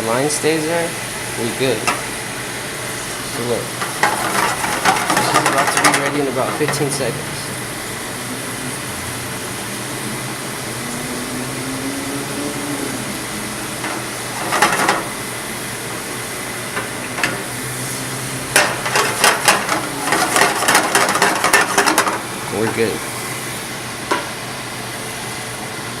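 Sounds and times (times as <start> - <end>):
sauce simmering and sizzling in a pan: 2.0 - 26.0
utensil scraping a pan: 3.8 - 7.1, 13.7 - 15.2, 16.8 - 22.2.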